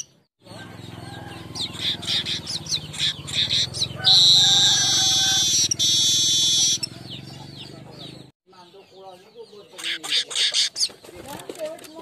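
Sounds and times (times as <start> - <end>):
bird chirping: 0.0 - 12.0
bird buzzing wheeze: 1.8 - 6.8.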